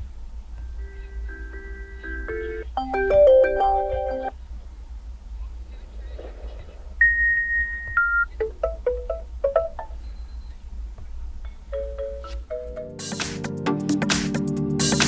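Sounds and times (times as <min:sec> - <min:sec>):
chime-like alarm melody: 0:01.3 - 0:04.3.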